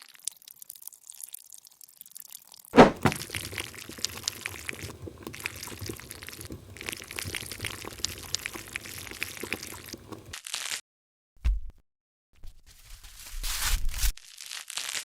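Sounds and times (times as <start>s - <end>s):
thick chocolate mixture pouring: 2.8s - 10.4s.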